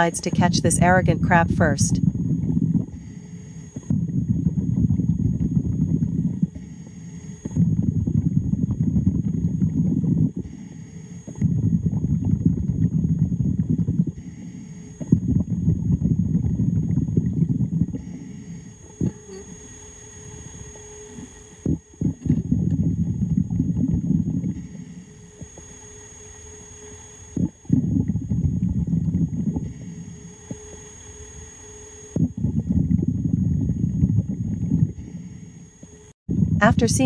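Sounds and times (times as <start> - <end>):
regulator exhaust bubbling: 0.0 - 3.1, 3.7 - 35.2.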